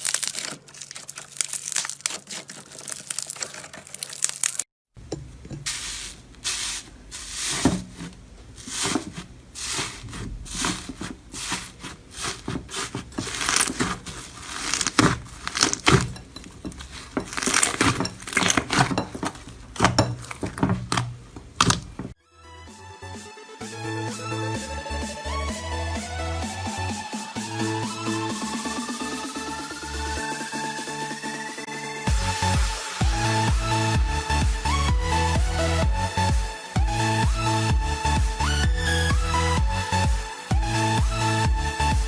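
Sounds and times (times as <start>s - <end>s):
slime crackling and popping: 0.0s - 4.6s, 8.7s - 22.0s.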